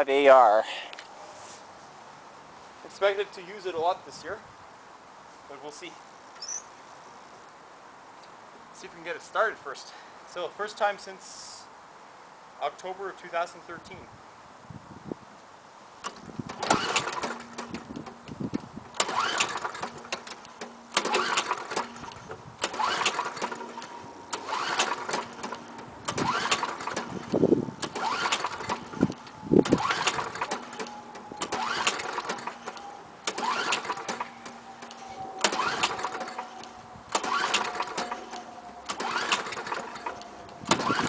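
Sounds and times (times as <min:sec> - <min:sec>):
mower recoil cord yanked: 0:16.0 - 0:18.2, 0:18.9 - 0:41.0.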